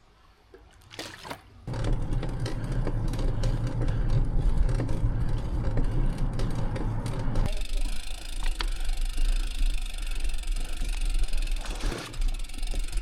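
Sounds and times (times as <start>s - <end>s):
rumbling road noise: 1.7s - 13.0s.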